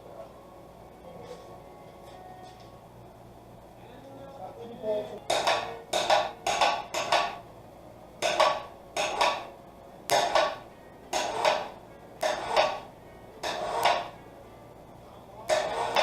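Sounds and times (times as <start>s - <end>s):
hand tool scraping metal: 11.2s - 12.8s, 13.4s - 14.1s, 15.5s - 16.0s.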